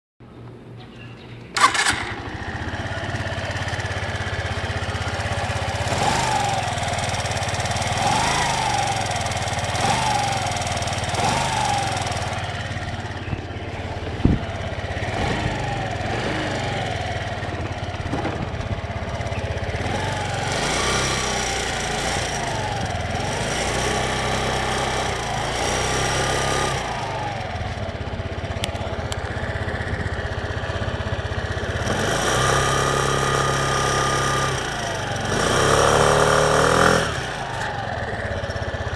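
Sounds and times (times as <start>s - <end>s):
engine cooling fan noise: 1.4s - 38.9s
scooter engine running: 1.6s - 38.9s.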